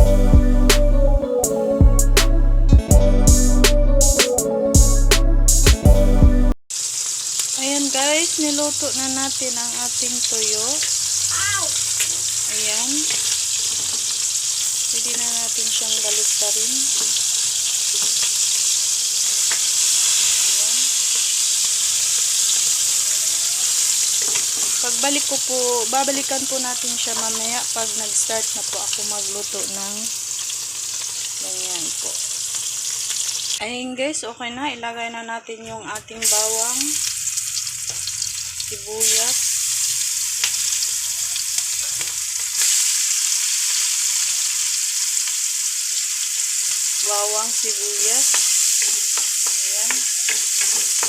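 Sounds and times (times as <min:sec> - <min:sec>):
fish sizzling in hot oil: 0:06.7 - 0:33.6, 0:36.2 - 0:51.0
stirring knocks: 0:48.2 - 0:51.0.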